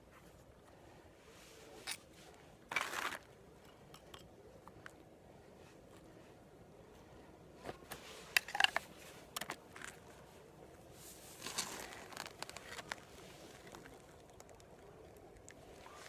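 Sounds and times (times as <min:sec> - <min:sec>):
rustling: 0:10.9 - 0:16.0.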